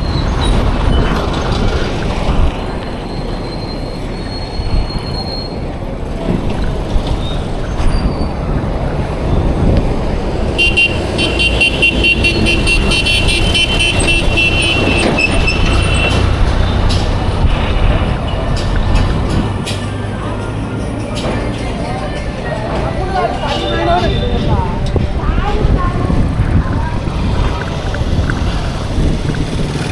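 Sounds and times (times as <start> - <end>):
road traffic rumbling: 0.0 - 29.9
vehicle horn blaring: 10.5 - 16.2.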